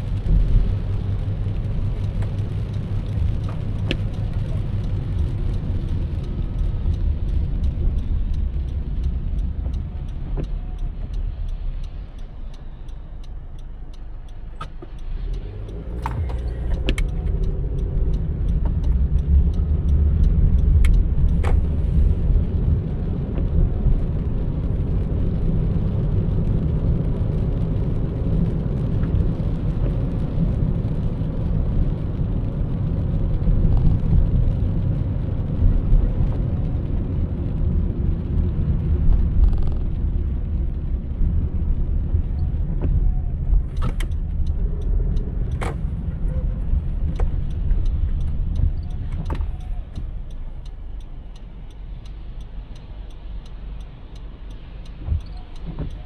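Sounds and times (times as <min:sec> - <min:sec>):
car road and engine rumble: 0:00.0 - 0:56.0
faint ticking: 0:42.9 - 0:56.0.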